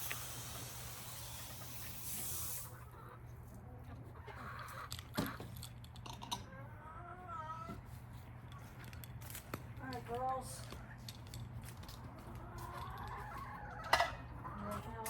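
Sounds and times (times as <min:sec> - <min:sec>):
hiss: 0:00.0 - 0:02.7
chickens clucking: 0:01.4 - 0:08.8, 0:11.8 - 0:15.0.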